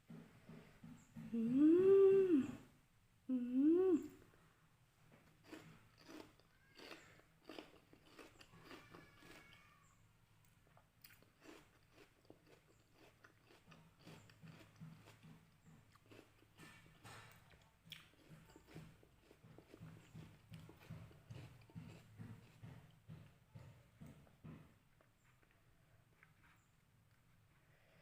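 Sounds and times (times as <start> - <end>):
chewing crisp fruit: 5.1 - 27.3.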